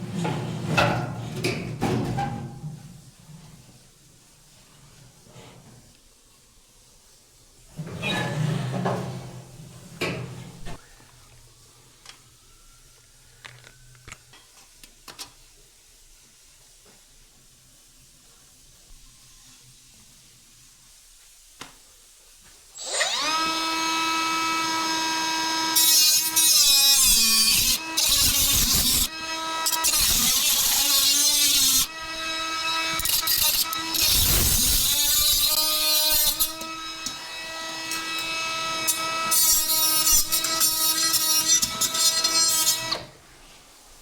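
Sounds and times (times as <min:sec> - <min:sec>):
power tool whining: 0:22.8 - 0:43.0
power tool grinding material: 0:22.8 - 0:43.1.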